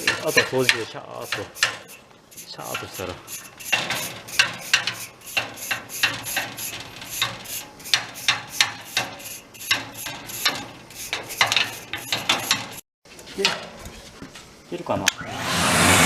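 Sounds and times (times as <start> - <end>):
brush scrubbing metal unit: 0.0 - 12.8.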